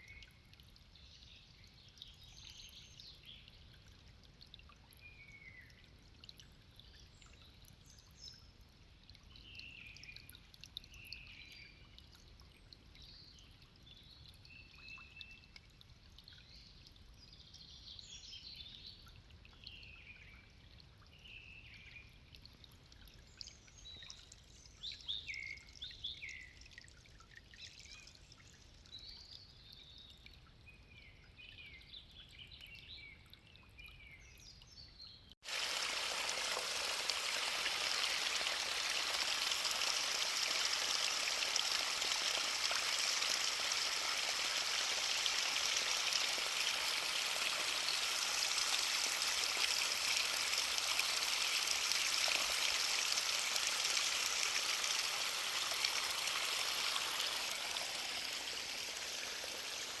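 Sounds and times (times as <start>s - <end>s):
small birds chirping: 27.5s - 60.0s
rush of flowing water: 35.4s - 60.0s.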